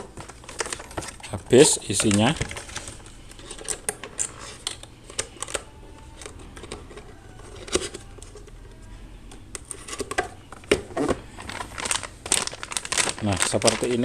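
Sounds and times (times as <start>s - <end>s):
packaging rustling: 0.0s - 14.0s.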